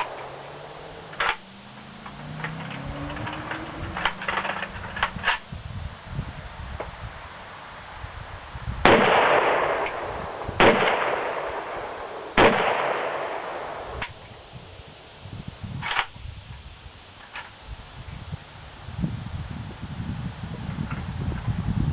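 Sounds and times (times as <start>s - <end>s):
rifle shots with echo: 8.8s - 14.2s
faint sharp cracks: 8.9s - 10.0s.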